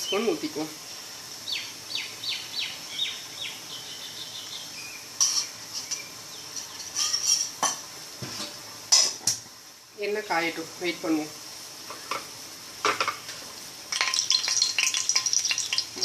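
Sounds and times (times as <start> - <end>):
metal spoon clinking on pan: 5.2 - 7.8, 13.9 - 16.0.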